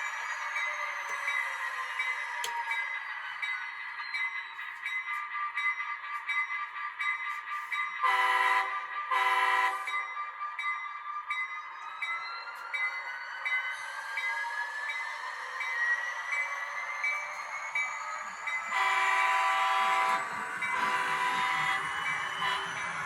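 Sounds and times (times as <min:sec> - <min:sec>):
diesel locomotive engine running: 0:00.0 - 0:10.5, 0:13.7 - 0:23.0
locomotive horn blasts: 0:08.0 - 0:09.9, 0:18.8 - 0:22.9.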